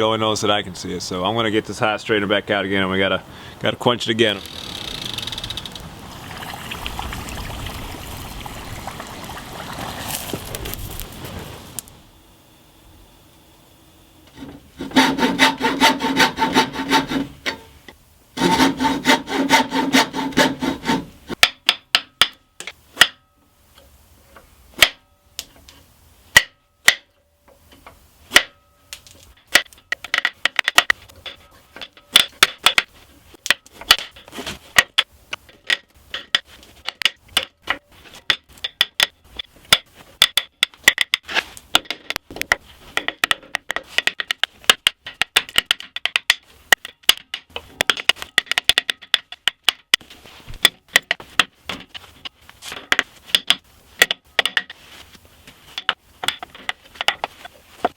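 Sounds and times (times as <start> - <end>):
hand tool rasping strokes: 4.3 - 5.8, 14.4 - 17.6, 18.4 - 21.4
sharp taps and knocks: 35.7 - 50.0.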